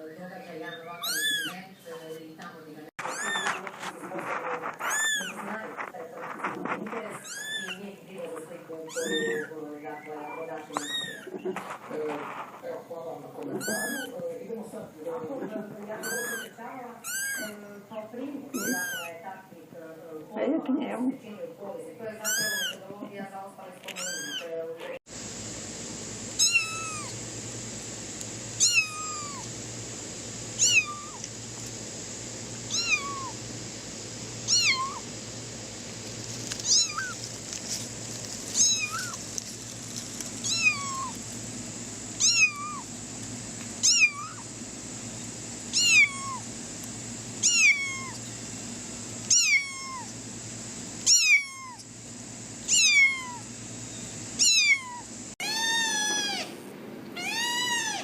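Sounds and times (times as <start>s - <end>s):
cat meowing: 0.8s - 1.6s, 3.0s - 3.7s, 4.6s - 5.4s, 7.1s - 7.8s, 8.9s - 9.5s, 10.7s - 11.4s, 13.6s - 14.1s, 16.0s - 17.6s, 18.5s - 19.1s, 22.2s - 22.8s, 23.9s - 24.4s, 26.4s - 27.1s, 28.6s - 29.4s, 30.6s - 31.2s, 32.7s - 33.4s, 34.5s - 35.0s, 36.6s - 37.2s, 38.6s - 39.2s, 40.4s - 41.1s, 42.2s - 42.9s, 43.8s - 44.4s, 45.7s - 46.4s, 47.4s - 48.2s, 49.3s - 50.1s, 51.1s - 51.8s, 52.7s - 53.4s, 54.4s - 56.5s, 57.2s - 58.0s.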